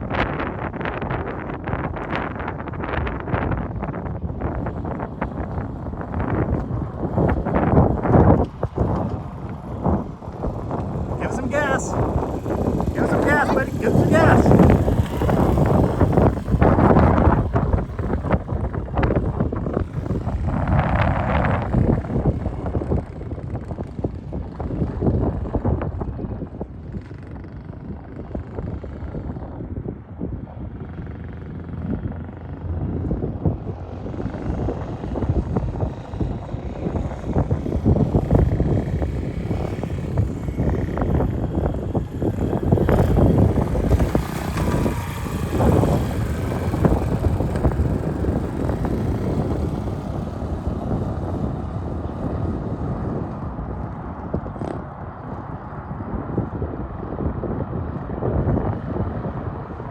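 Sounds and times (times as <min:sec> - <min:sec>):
small motorbike engine running: 0:00.1 - 0:59.9.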